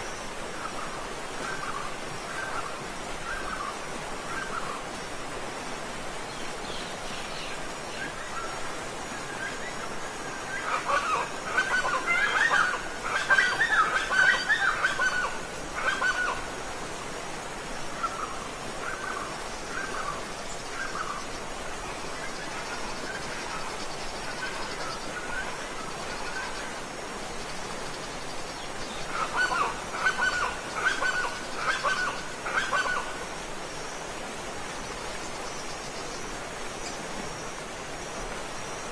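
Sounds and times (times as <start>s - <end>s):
waterfall rushing water: 0.0s - 38.9s
bird calling: 10.5s - 16.4s, 29.0s - 33.1s.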